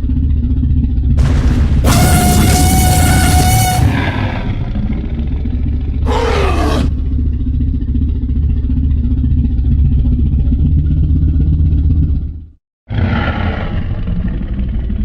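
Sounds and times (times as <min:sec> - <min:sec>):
low rumbling growl: 0:00.0 - 0:15.0
roar falling in pitch: 0:01.8 - 0:07.0, 0:12.9 - 0:15.0.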